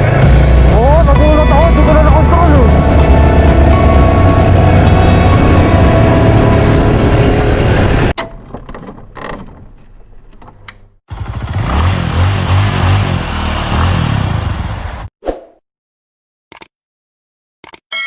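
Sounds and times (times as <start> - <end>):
music: 0.0 - 8.1
atv engine revving: 11.1 - 15.1.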